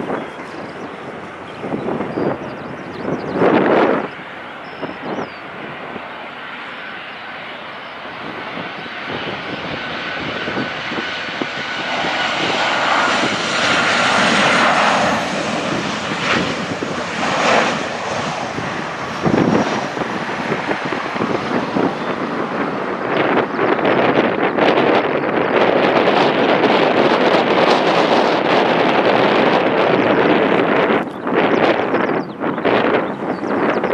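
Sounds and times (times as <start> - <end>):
aeroplane engines rushing: 0.0 - 33.9.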